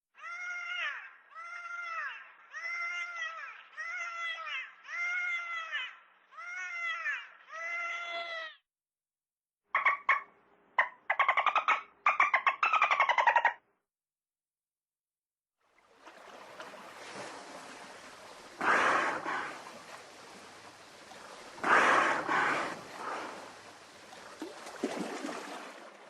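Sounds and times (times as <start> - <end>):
dolphin clicks and squawks: 9.8 - 13.6.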